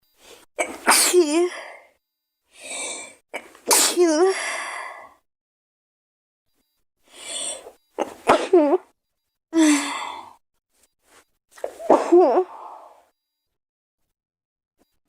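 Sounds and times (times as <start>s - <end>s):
girl sneezing: 0.6s - 1.7s, 3.4s - 4.5s, 8.0s - 8.8s, 11.6s - 12.6s.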